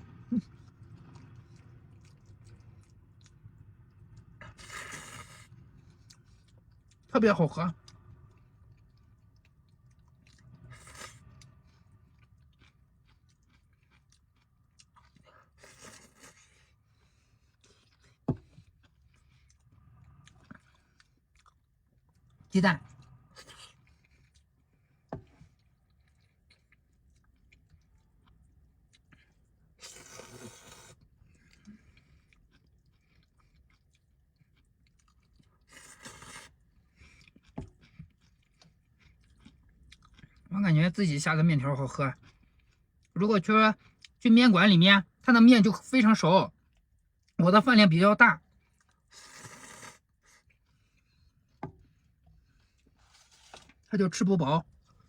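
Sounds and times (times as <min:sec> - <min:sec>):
person chewing noodles: 0:00.0 - 0:07.1, 0:07.7 - 0:40.5, 0:42.2 - 0:43.2, 0:43.8 - 0:44.2, 0:46.5 - 0:47.4, 0:48.4 - 0:53.9, 0:54.6 - 0:55.0
noodle slurping: 0:29.8 - 0:31.1, 0:49.1 - 0:50.2.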